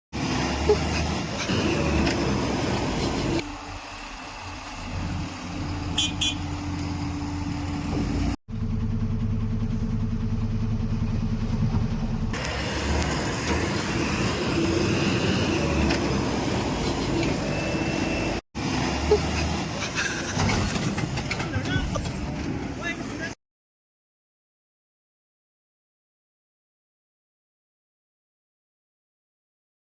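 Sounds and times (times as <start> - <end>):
heavy diesel engines running: 0.2 - 23.4.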